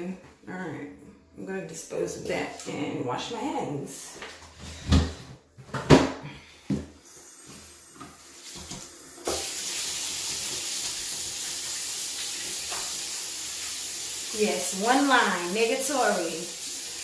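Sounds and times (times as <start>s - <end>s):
water running from sink tap: 7.4s - 17.0s.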